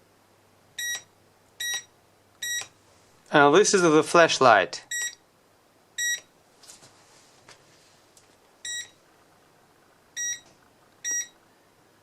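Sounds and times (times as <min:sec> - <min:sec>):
high electronic beeps: 0:08.6 - 0:09.0, 0:10.2 - 0:11.4.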